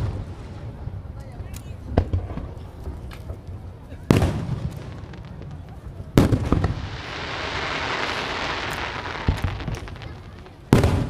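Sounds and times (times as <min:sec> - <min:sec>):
hissing crackle of fireworks: 0:00.0 - 0:11.0
fireworks bang: 0:04.1 - 0:11.0.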